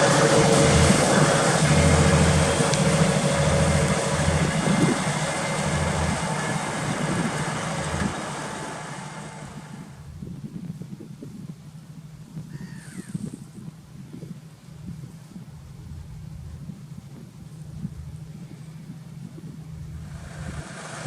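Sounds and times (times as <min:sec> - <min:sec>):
tractor engine running under load: 0:00.0 - 0:10.4, 0:17.6 - 0:21.0.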